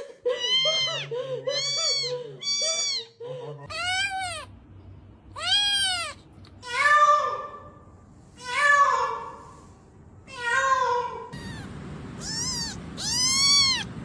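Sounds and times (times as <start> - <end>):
cat meowing: 5.4 - 6.9, 11.3 - 14.0.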